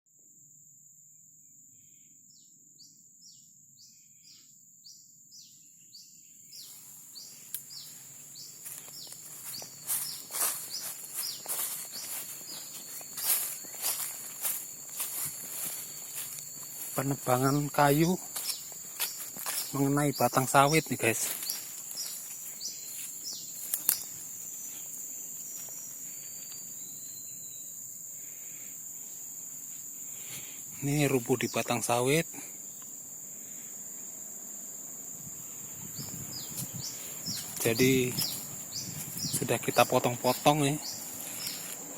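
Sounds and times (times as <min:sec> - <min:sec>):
high insect whine: 0:00.1 - 0:41.9
bird chirping: 0:02.3 - 0:24.9, 0:25.8 - 0:27.8, 0:35.7 - 0:41.8
footsteps through dry leaves: 0:06.8 - 0:20.3, 0:21.0 - 0:24.8, 0:36.0 - 0:41.9.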